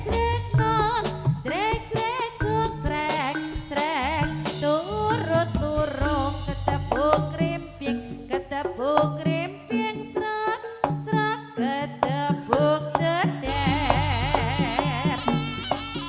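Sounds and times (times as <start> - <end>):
drum strokes: 0.0 - 8.2, 12.3 - 16.0.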